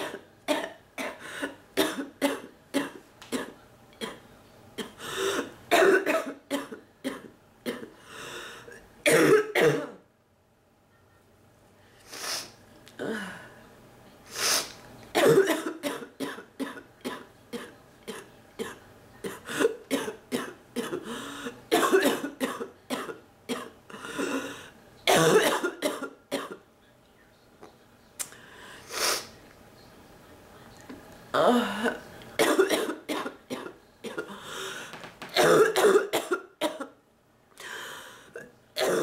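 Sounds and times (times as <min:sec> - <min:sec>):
woman barking cough: 0:05.7 - 0:07.8, 0:09.1 - 0:10.0, 0:15.2 - 0:21.0, 0:25.1 - 0:26.6, 0:32.4 - 0:34.3, 0:35.4 - 0:36.9.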